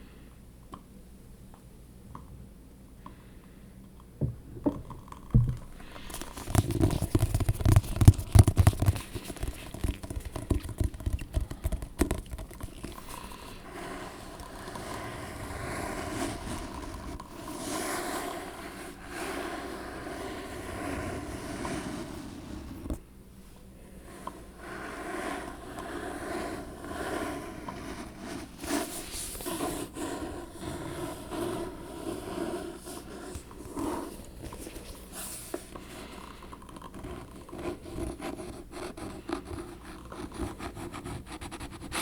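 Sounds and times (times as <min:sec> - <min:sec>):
rapid tapping with dull thuds: 0:04.2 - 0:13.1
steady scratching: 0:04.6 - 0:23.0, 0:23.9 - 0:42.0.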